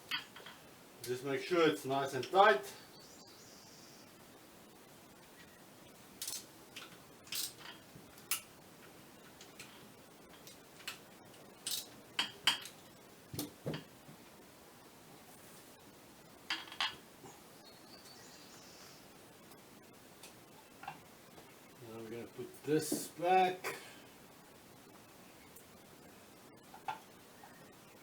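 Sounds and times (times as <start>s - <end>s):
metal parts and tools clinking: 6.2s - 8.5s, 11.6s - 12.8s.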